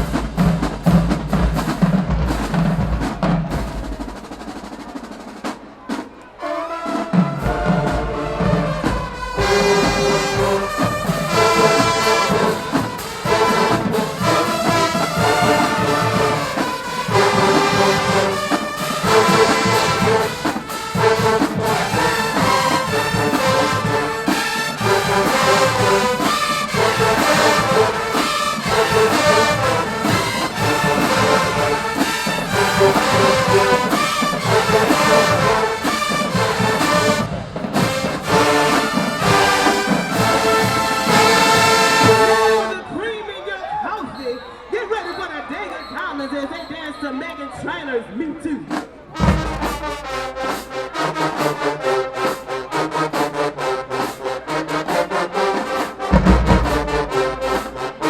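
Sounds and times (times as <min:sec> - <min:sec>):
brass horns playing: 0:00.0 - 0:42.9, 0:49.0 - 0:58.0
driving drum beat: 0:00.0 - 0:42.9, 0:48.6 - 0:58.0.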